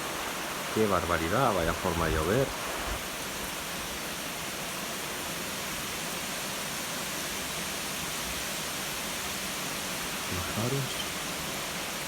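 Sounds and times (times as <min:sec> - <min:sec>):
heavy rain pouring: 0:00.0 - 0:05.2, 0:09.2 - 0:12.0.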